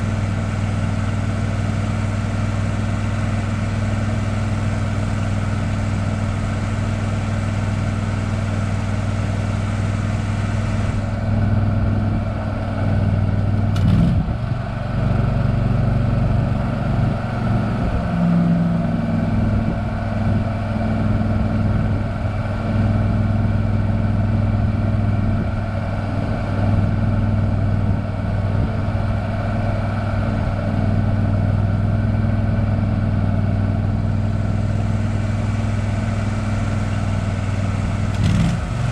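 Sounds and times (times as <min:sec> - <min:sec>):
engine running at low speed: 0:00.0 - 0:38.9.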